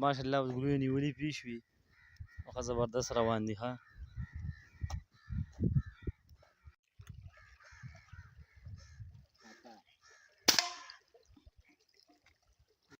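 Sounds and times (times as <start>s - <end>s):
air rifle firing: 10.5s - 11.0s.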